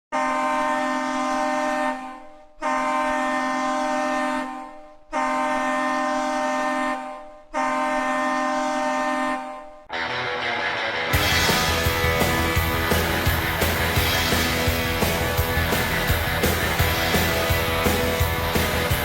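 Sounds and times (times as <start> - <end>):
hockey goal horn blasts: 0.1 - 9.8.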